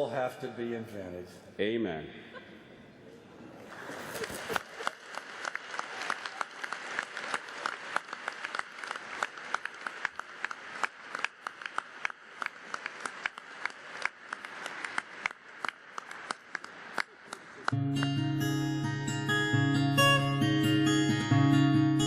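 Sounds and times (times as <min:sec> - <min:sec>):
audience applauding: 0:03.5 - 0:17.8.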